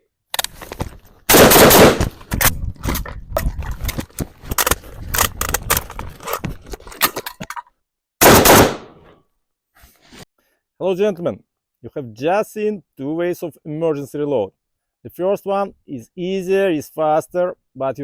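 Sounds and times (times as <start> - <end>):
gunfire: 1.3 - 2.2, 8.2 - 9.0.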